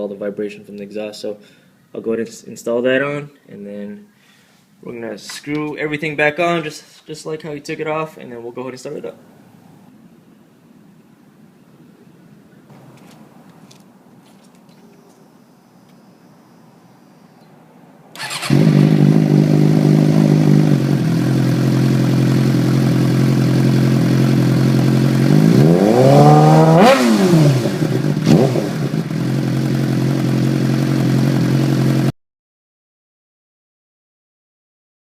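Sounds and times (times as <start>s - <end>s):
motorcycle engine revving: 18.2s - 32.1s
motorcycle engine starting and idling: 18.2s - 32.1s.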